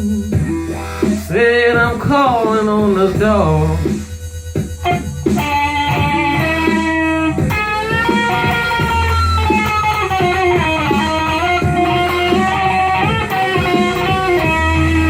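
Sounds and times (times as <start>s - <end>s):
blues electric guitar music: 0.0s - 15.0s.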